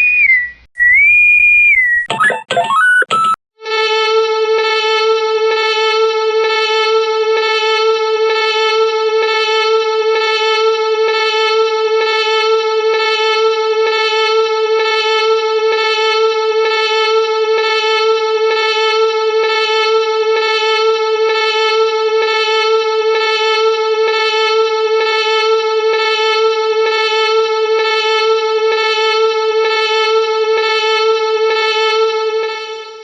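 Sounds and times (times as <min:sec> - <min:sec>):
pulsing electronic tone: 0:00.0 - 0:03.4.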